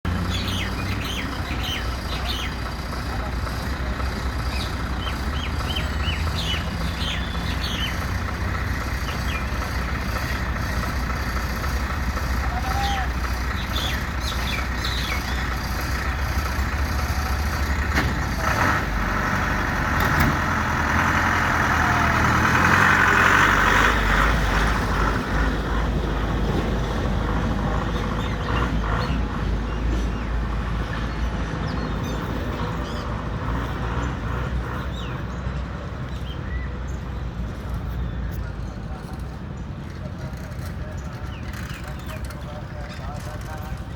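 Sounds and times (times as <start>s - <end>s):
passing traffic rumble: 0.0s - 43.9s
bird chirps: 0.2s - 2.6s, 4.5s - 10.8s.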